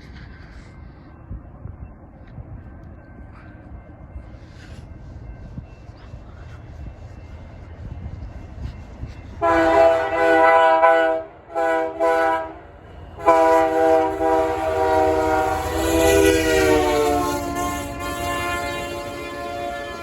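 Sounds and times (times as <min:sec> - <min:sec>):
low rumble of train: 0:00.0 - 0:20.0
locomotive air horn: 0:09.4 - 0:12.6, 0:13.2 - 0:20.0.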